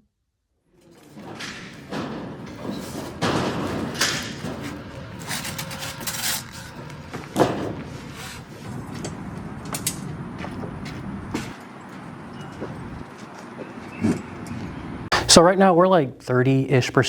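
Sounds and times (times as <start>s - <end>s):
scraping noises: 1.0s - 9.0s
construction knocks and thuds: 1.2s - 4.9s, 7.2s - 8.0s
sharp loud bang: 15.1s - 15.4s.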